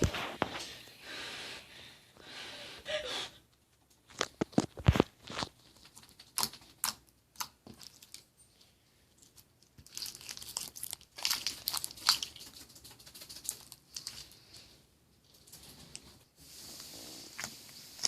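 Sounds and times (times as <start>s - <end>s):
slime crackling and popping: 9.7s - 14.2s.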